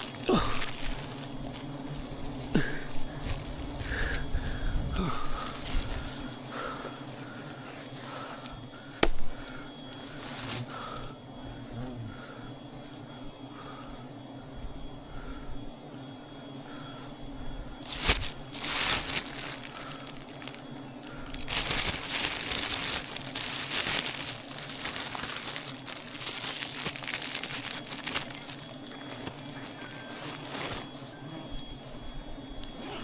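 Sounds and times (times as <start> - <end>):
rustling crinkling: 0.0 - 11.0, 17.8 - 32.1
steady low hum: 0.0 - 33.0.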